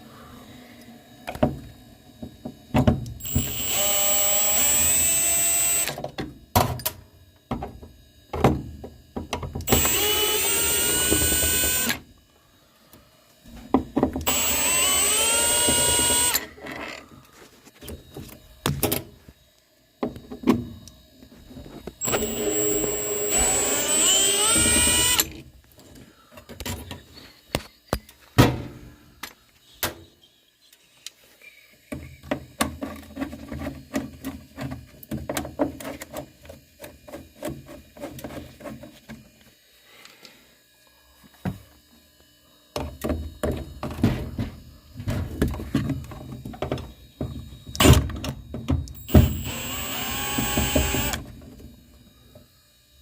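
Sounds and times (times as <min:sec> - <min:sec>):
cordless drill whining: 0:03.2 - 0:06.0, 0:09.7 - 0:12.0, 0:14.2 - 0:17.0, 0:22.0 - 0:25.3, 0:49.0 - 0:51.2.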